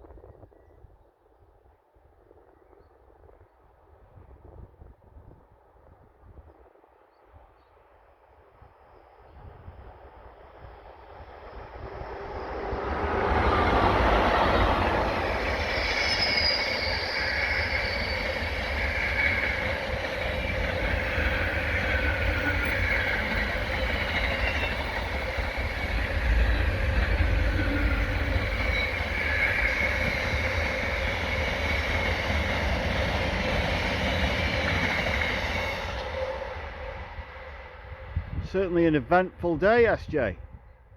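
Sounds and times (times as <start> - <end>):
wheels rushing on rail: 9.2 - 38.5
high-pitched wheel squeals: 12.4 - 32.4.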